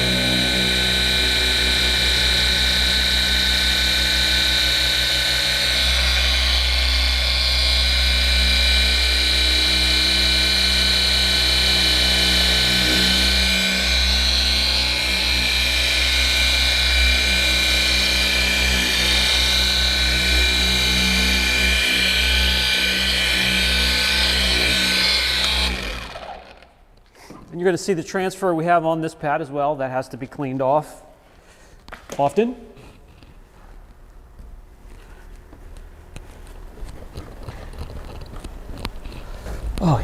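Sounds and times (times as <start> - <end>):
polisher high whine: 0.0 - 26.9.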